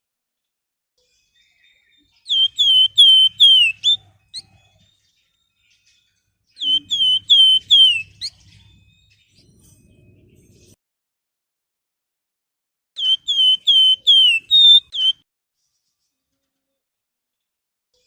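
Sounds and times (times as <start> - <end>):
bird whistling song: 1.4 - 4.8, 6.5 - 9.5, 13.0 - 15.2.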